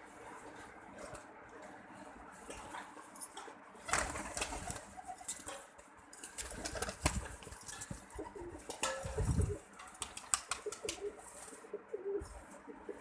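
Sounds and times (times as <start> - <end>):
pigeons cooing: 8.1 - 9.7, 10.5 - 13.0.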